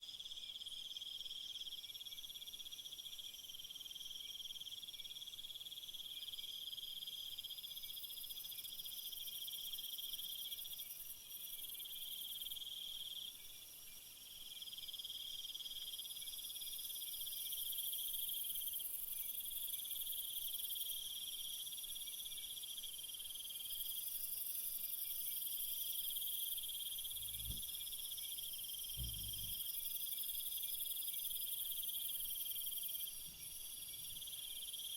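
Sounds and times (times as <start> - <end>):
crickets trilling: 23.7 - 34.9
soft low thumps: 27.2 - 27.7, 29.0 - 29.6.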